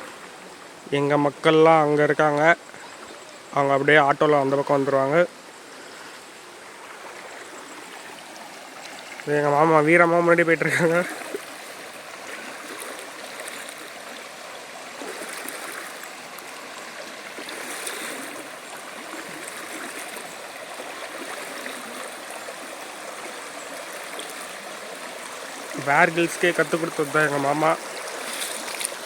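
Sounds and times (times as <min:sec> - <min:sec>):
river water rushing over rocks: 0:06.3 - 0:29.0.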